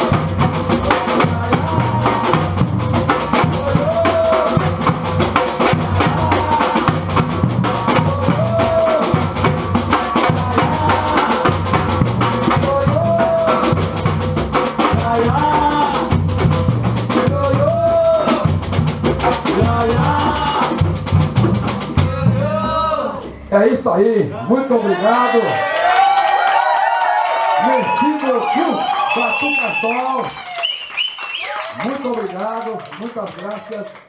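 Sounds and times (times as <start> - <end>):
deep bass drums: 0.0 - 23.7.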